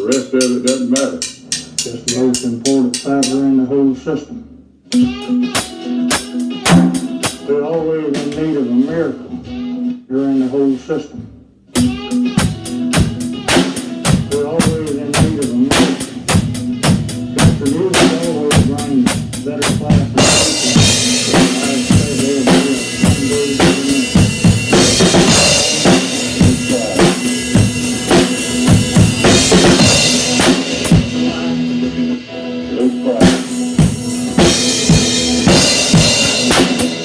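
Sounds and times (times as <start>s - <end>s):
band music: 4.9s - 37.0s
bass drum and snare beat: 5.0s - 7.5s, 11.8s - 31.5s, 33.2s - 37.0s.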